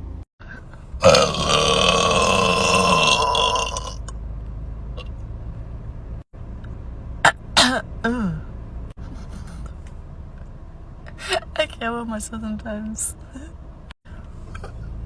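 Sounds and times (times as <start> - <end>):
person burping: 1.0 - 4.1.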